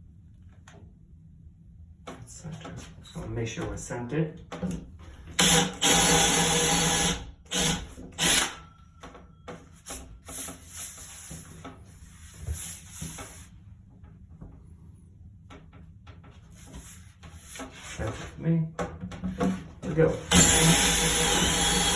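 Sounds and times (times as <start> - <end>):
rubbing and light knocks: 15.5 - 18.4.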